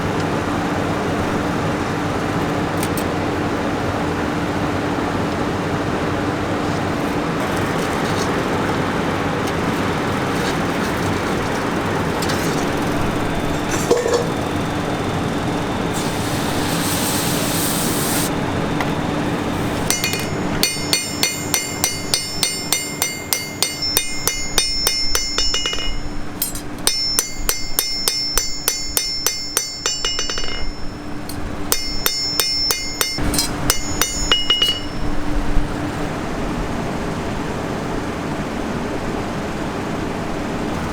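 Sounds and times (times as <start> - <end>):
hammer blows on steel anvil: 19.6 - 35.3.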